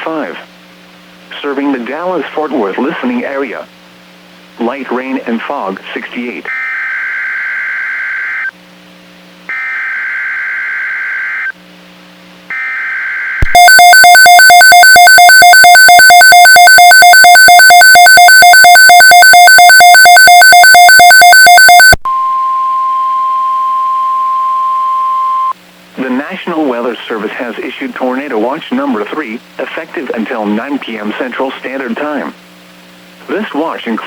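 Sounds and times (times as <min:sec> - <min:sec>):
rapidly pulsing electronic alarm: 0:12.6 - 0:25.6
steady alert tone: 0:13.4 - 0:22.3.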